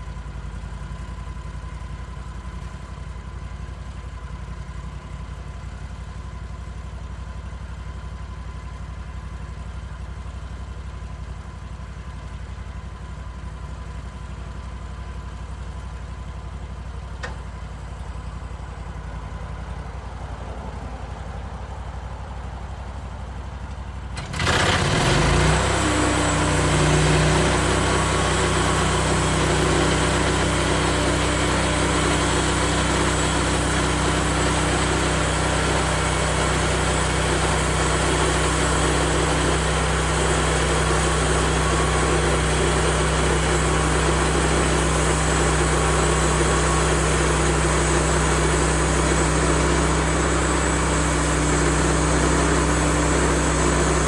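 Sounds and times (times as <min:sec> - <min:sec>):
sawmill gas engine revving: 0:24.2 - 0:54.0.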